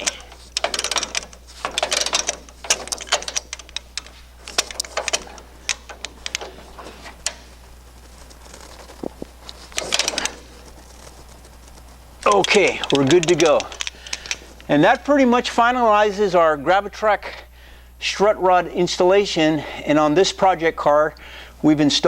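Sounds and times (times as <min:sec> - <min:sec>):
ratchet wrench clicking: 0:00.0 - 0:06.5.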